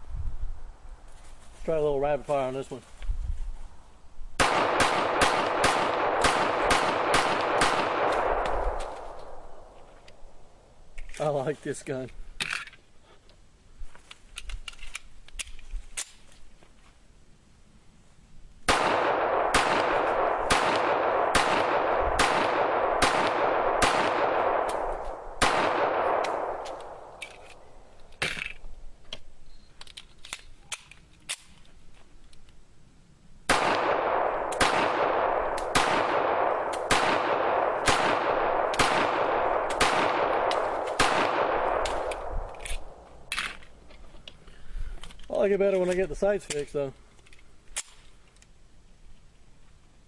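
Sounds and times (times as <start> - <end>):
pistol shots: 4.4 - 9.4, 18.7 - 27.2, 33.5 - 43.0.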